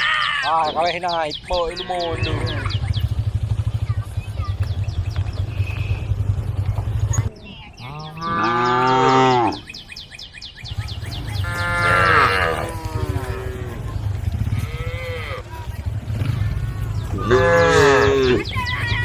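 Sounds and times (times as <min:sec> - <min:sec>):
cows mooing: 0:00.0 - 0:00.8, 0:01.8 - 0:02.9, 0:07.8 - 0:09.7, 0:11.2 - 0:19.0.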